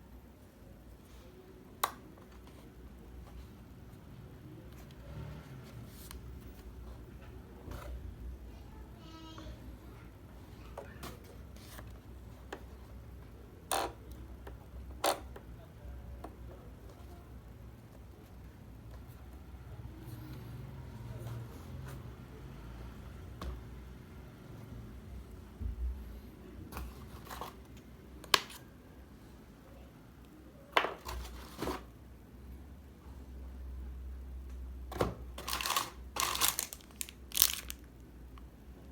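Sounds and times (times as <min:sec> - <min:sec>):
packaging rustles: 0:35.4 - 0:37.9.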